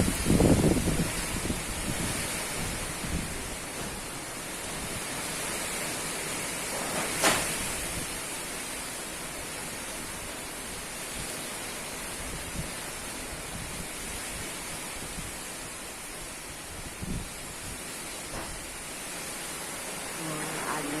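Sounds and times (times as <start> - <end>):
strong wind blowing: 0.0 - 5.3, 7.4 - 8.3, 12.0 - 18.8.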